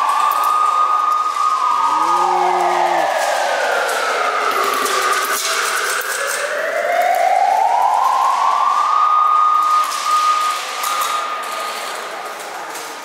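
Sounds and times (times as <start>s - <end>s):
siren-like wail rising in pitch: 0.9s - 5.4s.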